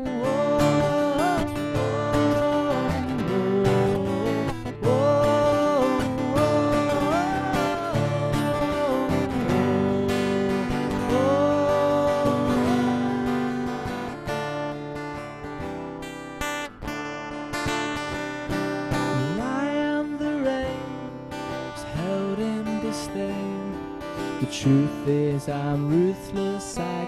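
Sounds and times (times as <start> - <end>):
person singing wordless notes: 0.0 - 14.3
strummed acoustic guitar: 0.0 - 27.0.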